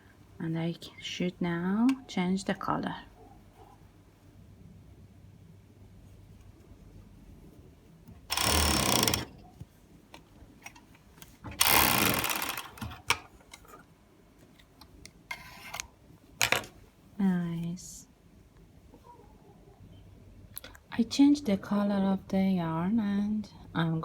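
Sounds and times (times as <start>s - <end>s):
sewing machine running: 8.3s - 9.4s, 11.6s - 13.0s.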